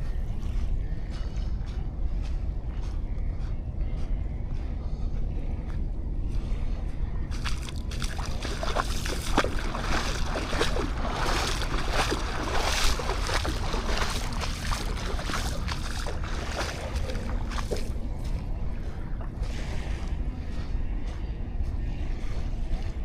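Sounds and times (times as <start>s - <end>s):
wind rumble on microphone: 0.0s - 23.0s
sea waves washing on shore: 7.5s - 18.0s.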